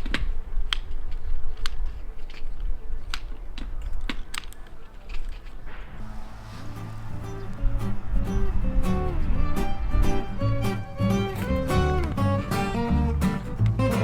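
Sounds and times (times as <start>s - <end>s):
low steady rumble: 5.8s - 14.0s
background music: 6.0s - 14.0s.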